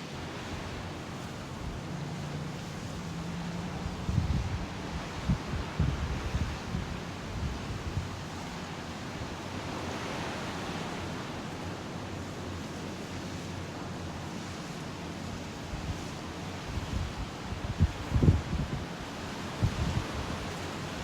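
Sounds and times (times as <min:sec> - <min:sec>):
ocean surf breaking: 0:00.0 - 0:12.4
wind buffeting microphone: 0:00.3 - 0:08.7, 0:16.6 - 0:21.0.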